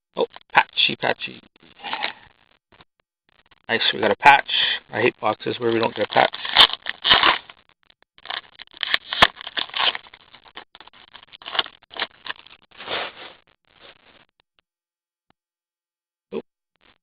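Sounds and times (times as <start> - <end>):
trading cards rustling and scraping: 1.8 - 2.3, 5.5 - 7.6, 8.2 - 14.2.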